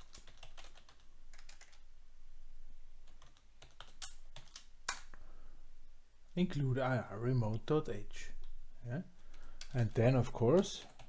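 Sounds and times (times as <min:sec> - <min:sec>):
typing on computer keyboard: 0:00.0 - 0:01.8, 0:03.1 - 0:05.0.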